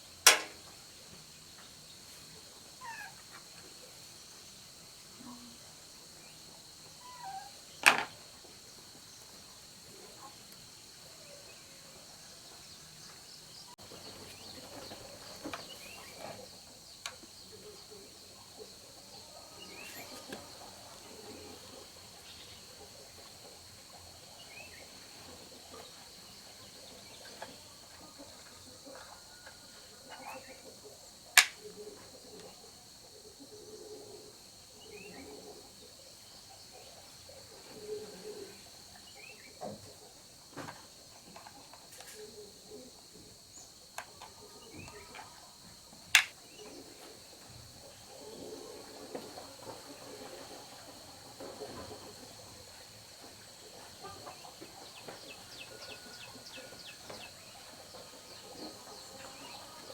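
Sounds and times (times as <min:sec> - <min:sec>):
insect trill: 0:00.0 - 0:48.9, 0:49.5 - 0:59.9
sharp loud clicks: 0:00.3 - 0:00.6, 0:31.4 - 0:31.6, 0:46.2 - 0:46.4.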